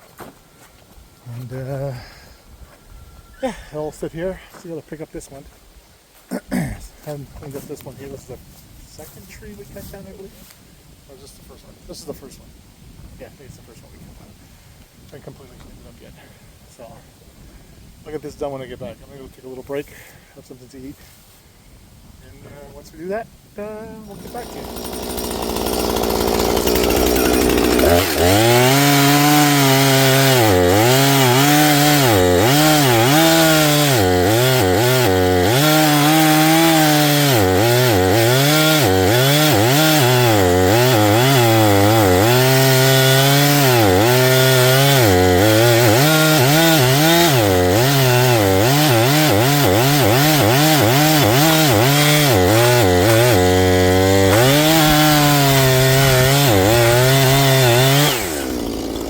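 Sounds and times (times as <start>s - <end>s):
chainsaw cutting wood: 24.1s - 59.0s.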